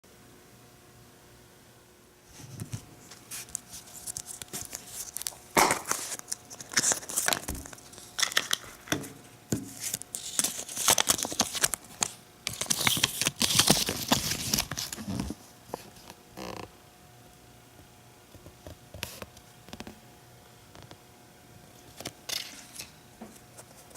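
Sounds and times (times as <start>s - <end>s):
plastic packaging crinkling and tearing: 3.1s - 9.1s, 9.7s - 16.2s.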